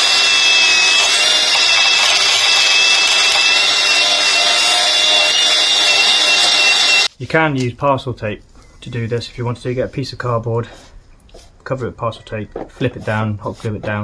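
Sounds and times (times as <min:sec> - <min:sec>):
electric power tool whining: 0:00.0 - 0:07.1.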